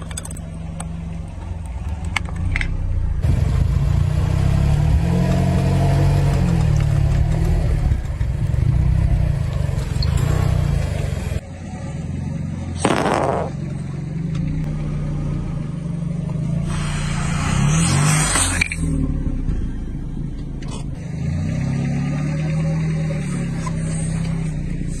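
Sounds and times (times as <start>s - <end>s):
loud crunch under tyres: 0.0s - 11.4s, 12.7s - 25.0s
car engine running: 0.0s - 25.0s
crackling of objects crushed: 12.8s - 13.6s.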